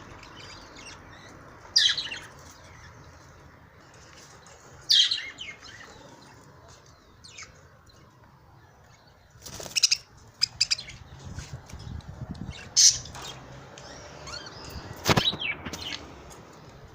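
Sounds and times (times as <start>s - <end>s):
budgerigars chirping: 0.0s - 3.0s, 4.8s - 6.0s, 9.5s - 11.1s, 12.5s - 16.0s.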